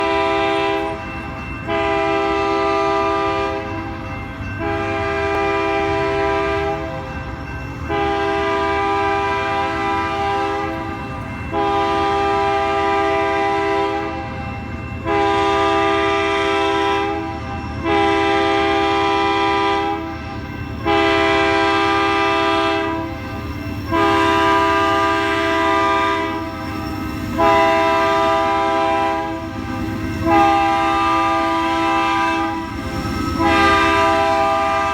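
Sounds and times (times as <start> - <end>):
locomotive air horn blasts: 0.0 - 1.0, 1.7 - 3.7, 4.6 - 7.0, 7.9 - 14.4, 15.0 - 20.1, 20.8 - 23.2, 23.9 - 26.7, 27.3 - 32.8, 33.4 - 34.9.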